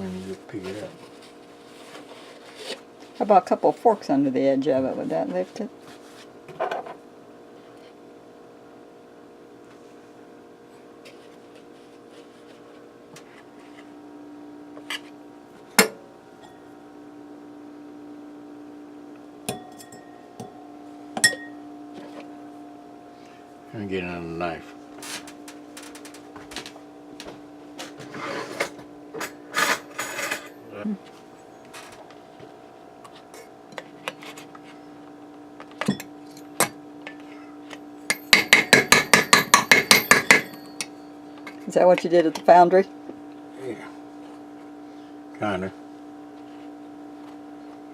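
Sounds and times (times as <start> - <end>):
low appliance hum: 0.0 - 47.9
metal clanking against pan: 38.1 - 40.9.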